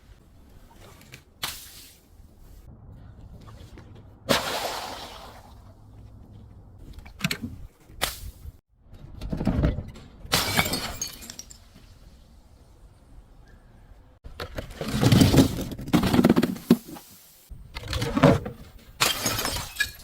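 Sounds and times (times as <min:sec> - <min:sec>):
glass bottle shattering: 0:10.3 - 0:11.8, 0:19.0 - 0:20.0.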